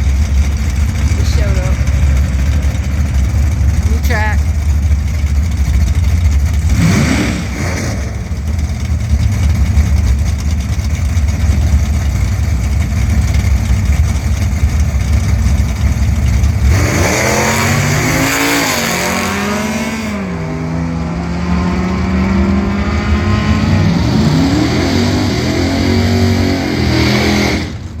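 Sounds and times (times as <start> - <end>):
drag car engine rumbling: 0.0 - 28.0.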